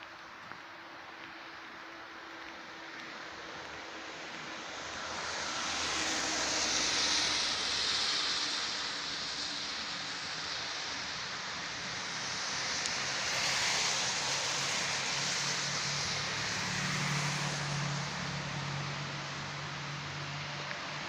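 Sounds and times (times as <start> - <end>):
outdoor rushing noise: 0.0 - 21.0.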